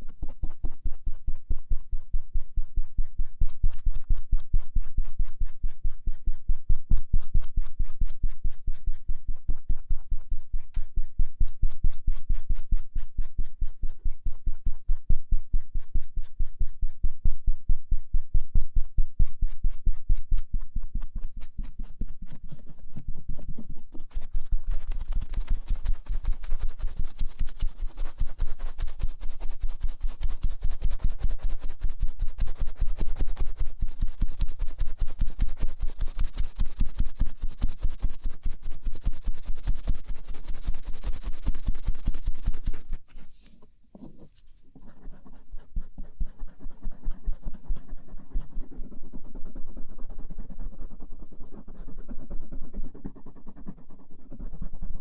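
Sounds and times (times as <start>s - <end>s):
cotton swab rubbing microphone: 0.0s - 18.0s, 18.8s - 55.0s.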